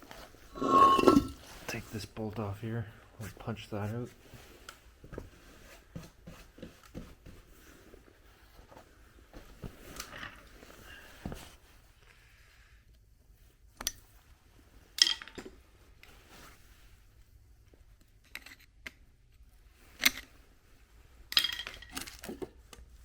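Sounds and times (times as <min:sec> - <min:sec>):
metal tools clinking and knocking: 0:00.6 - 0:01.4.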